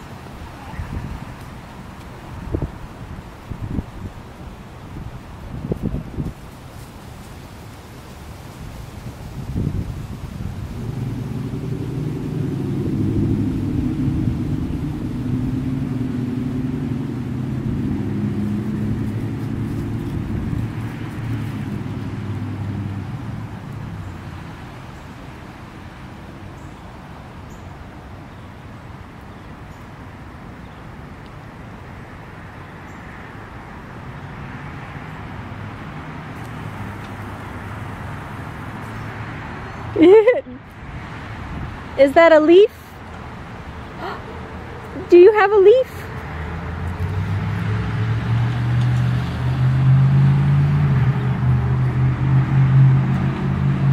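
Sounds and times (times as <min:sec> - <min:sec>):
low rumbling drone: 0:10.3 - 0:24.3.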